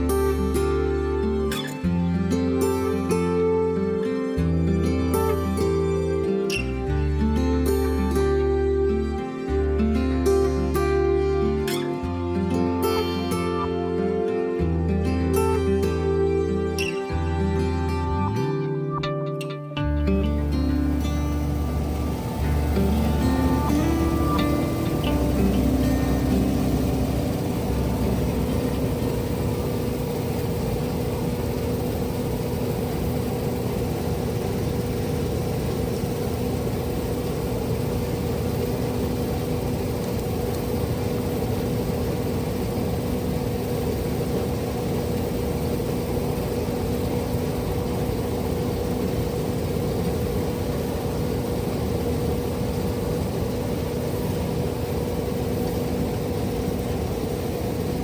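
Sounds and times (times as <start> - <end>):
combine harvester running: 20.4 - 58.0.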